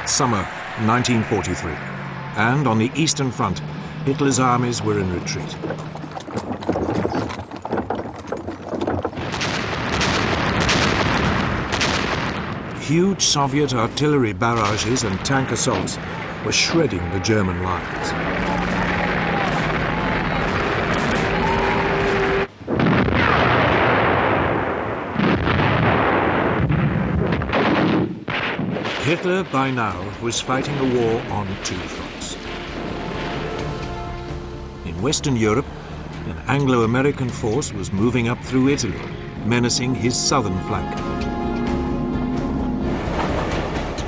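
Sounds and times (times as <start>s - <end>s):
explosions roaring: 0.0s - 44.0s
shells bursting: 3.6s - 13.1s, 14.4s - 17.0s, 17.7s - 34.9s
artillery guns firing: 4.4s - 34.3s
gunfire crackle: 5.4s - 13.1s, 14.4s - 16.8s, 17.7s - 34.3s.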